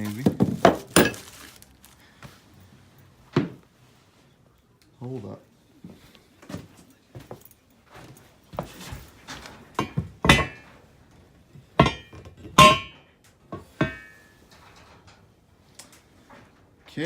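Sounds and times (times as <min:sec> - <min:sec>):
ringing metal clanks: 0:09.8 - 0:10.7, 0:11.8 - 0:13.1, 0:13.8 - 0:14.4.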